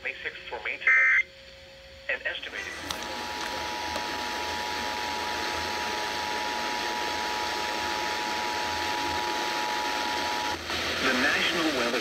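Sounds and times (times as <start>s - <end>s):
radio static hiss: 0.0s - 1.3s, 2.0s - 3.7s, 9.6s - 12.0s.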